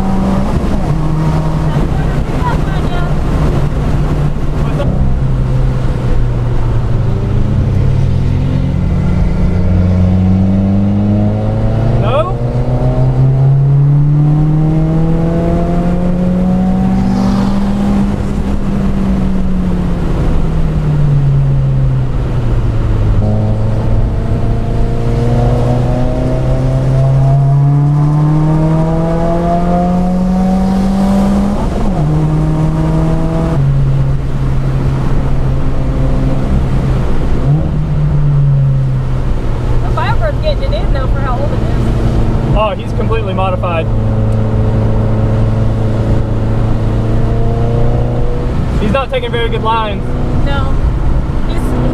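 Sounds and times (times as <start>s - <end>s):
car engine revving: 0.0s - 51.9s.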